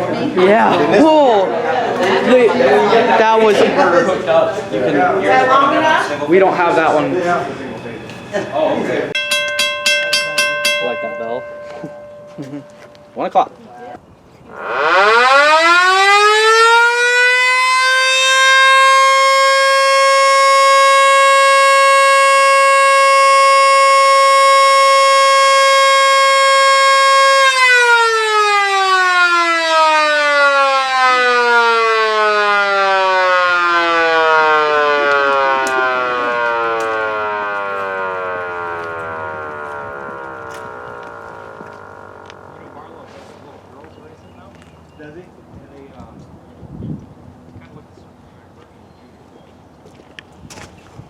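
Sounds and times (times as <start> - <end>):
warning siren winding: 14.5 - 42.7.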